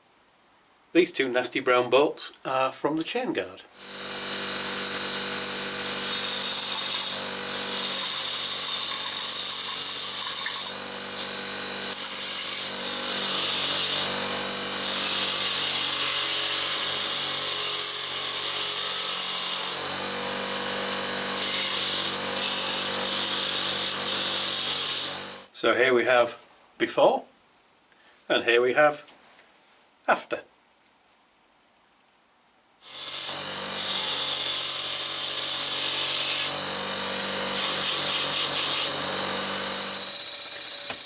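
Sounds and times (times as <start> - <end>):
power tool motor humming: 3.8 - 25.5, 32.8 - 41.0.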